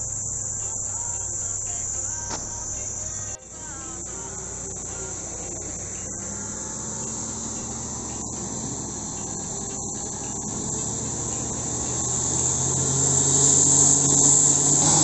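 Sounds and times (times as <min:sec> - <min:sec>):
high insect buzz: 0:00.0 - 0:15.0
vehicle engine at full throttle: 0:00.0 - 0:15.0.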